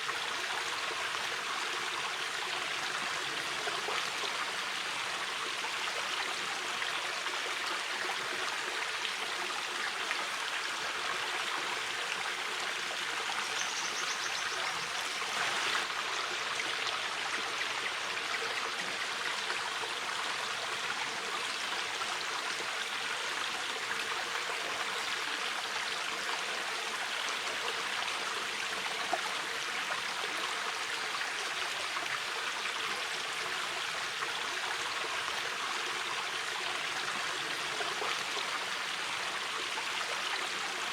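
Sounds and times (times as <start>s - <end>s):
river water rushing and babbling: 0.0s - 40.9s.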